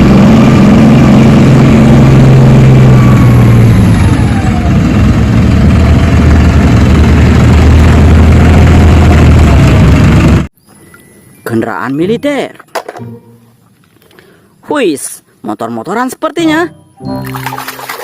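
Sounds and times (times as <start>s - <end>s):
heavy tank engine running: 0.0s - 10.5s.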